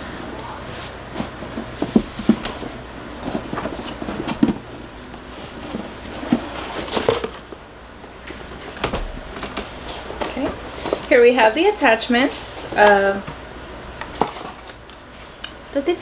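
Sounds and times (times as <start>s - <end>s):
packaging rustling: 0.6s - 7.6s.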